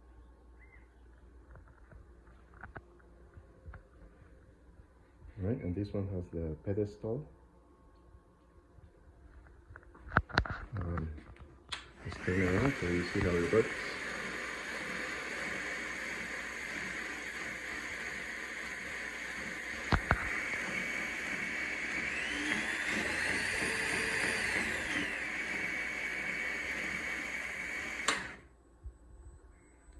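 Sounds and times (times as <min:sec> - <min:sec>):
belt grinder whining: 0:12.0 - 0:28.5.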